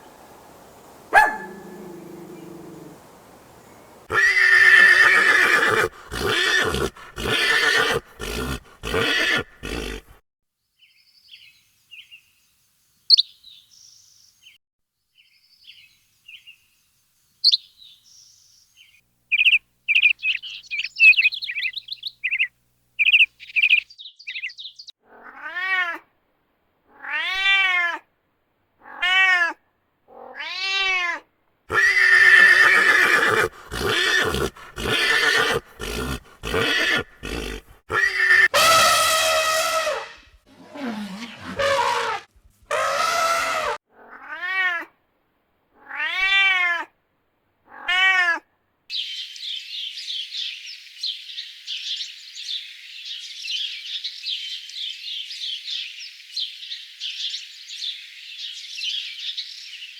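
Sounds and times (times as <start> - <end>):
small birds chirping: 0.0 - 10.2, 10.8 - 14.6, 15.2 - 24.9, 31.7 - 38.4, 48.9 - 59.9
horse neighing: 1.1 - 3.1, 4.0 - 10.2, 31.7 - 43.8
cat meowing: 25.1 - 26.0, 26.9 - 28.0, 28.8 - 38.5, 43.6 - 44.9, 45.8 - 46.9, 47.7 - 48.4.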